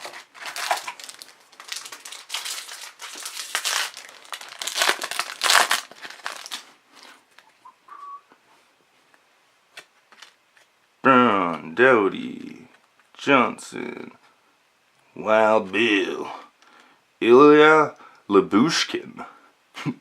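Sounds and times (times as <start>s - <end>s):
foil wrapper crinkling and tearing: 0.0s - 7.2s.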